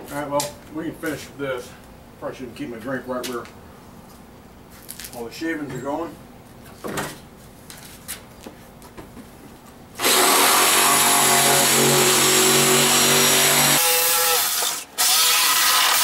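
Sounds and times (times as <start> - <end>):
power tool cutting plastic: 10.0 - 16.0.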